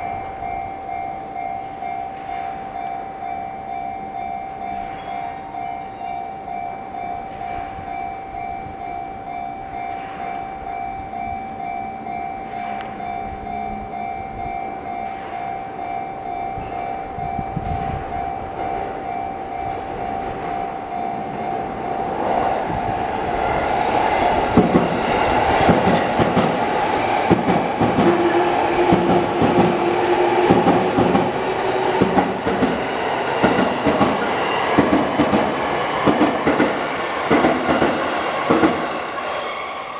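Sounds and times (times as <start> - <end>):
level crossing bell dinging: 0.0 - 22.2
train wheels clacking over rail joints: 24.3 - 39.1.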